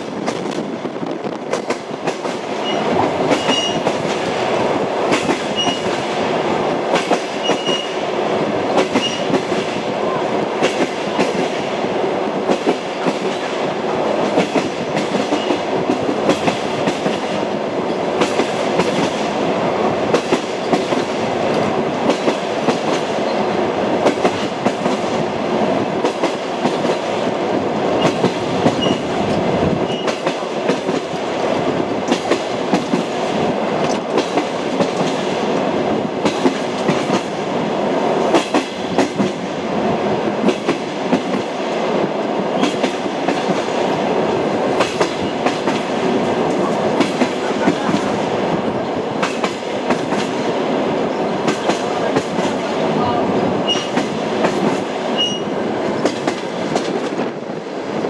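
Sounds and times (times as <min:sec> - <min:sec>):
train running noise: 0:00.0 - 0:58.0
train wheels knocking over joints: 0:28.0 - 0:37.4.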